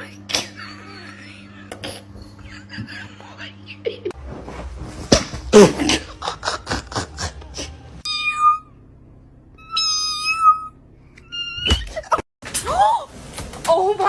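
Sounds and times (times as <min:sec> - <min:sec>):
cat meowing: 0:09.6 - 0:11.8.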